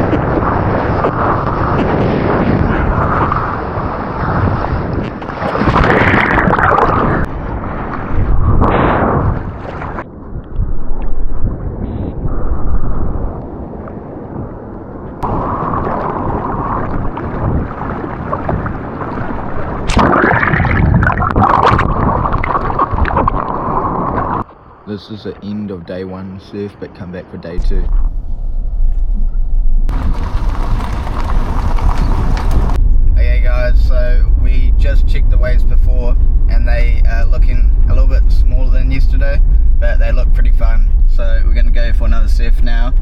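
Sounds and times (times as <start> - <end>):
surf and rushing water: 0.0 - 10.1, 15.2 - 25.0
wind buffeting microphone: 0.0 - 24.5, 27.6 - 43.0.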